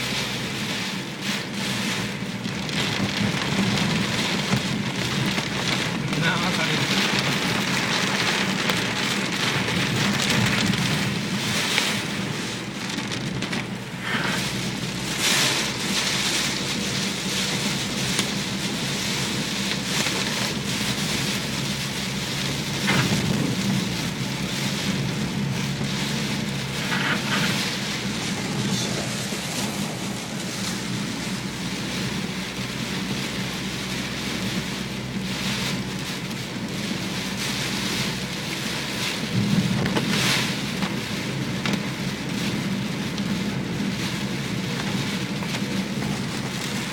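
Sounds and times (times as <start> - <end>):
heavy rain falling: 0.0 - 46.9.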